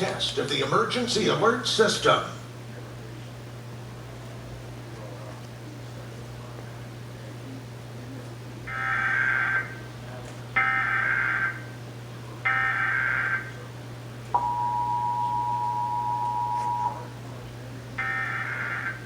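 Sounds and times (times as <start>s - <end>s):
low hum: 14.4s - 17.1s
two-tone attention signal: 14.4s - 17.1s, 18.0s - 19.0s.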